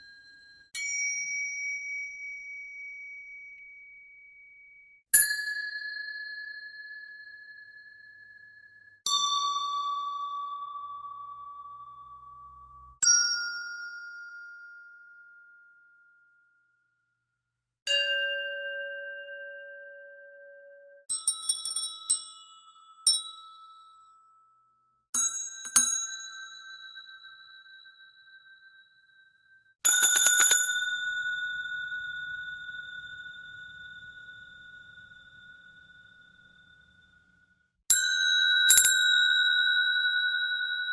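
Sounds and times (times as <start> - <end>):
desk service bell dings: 29.9 - 33.4.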